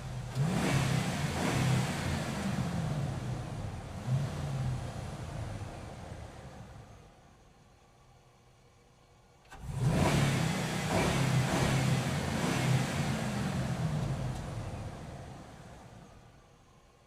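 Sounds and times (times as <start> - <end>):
truck engine driving: 0.0 - 7.4, 9.5 - 16.8.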